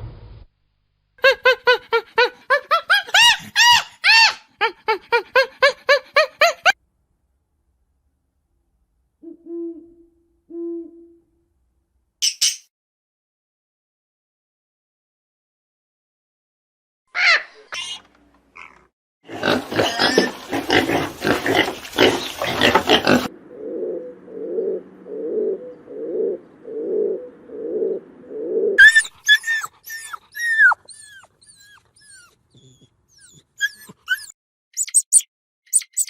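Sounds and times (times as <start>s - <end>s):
harsh animal calls: 17.2s - 35.2s
short high falling chirps: 34.8s - 36.0s.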